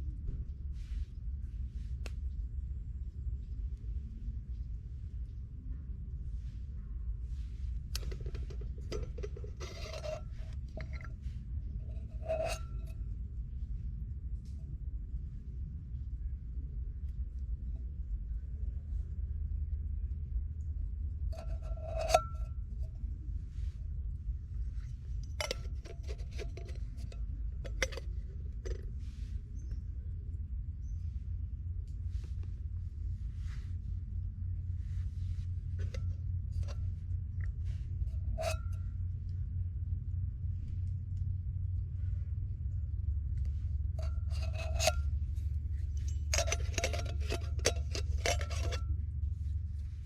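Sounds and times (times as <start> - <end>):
steady low rumble: 0.0 - 50.0
faint metallic ring: 7.3 - 13.1, 21.3 - 23.7, 24.8 - 29.8, 34.8 - 39.1, 43.5 - 50.0
rapid rasping grating strokes: 7.9 - 11.3, 11.9 - 12.9, 25.3 - 29.3, 44.0 - 45.2, 45.8 - 48.9
light clinks and clicks: 8.0 - 13.0, 24.8 - 29.8, 43.4 - 49.0.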